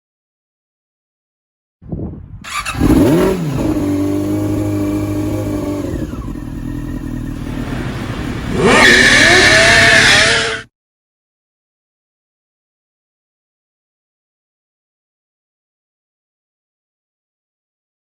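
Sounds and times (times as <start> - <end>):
motorcycle engine revving: 2.4 - 10.7.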